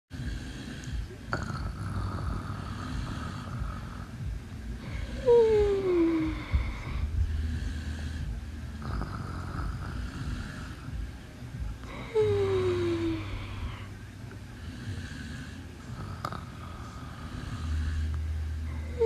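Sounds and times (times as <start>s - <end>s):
snoring: 0.1s - 11.0s, 11.8s - 19.0s.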